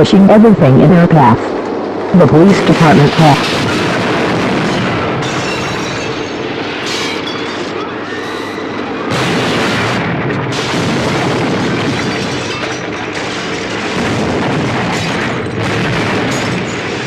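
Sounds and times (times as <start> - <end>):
loud storm wind: 0.0 - 17.0.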